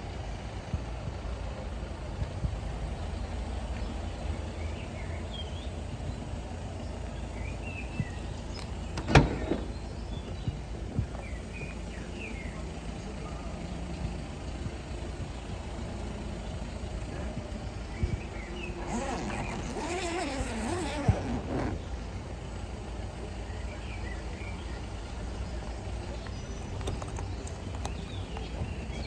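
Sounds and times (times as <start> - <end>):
loud thump: 9.0 - 9.9.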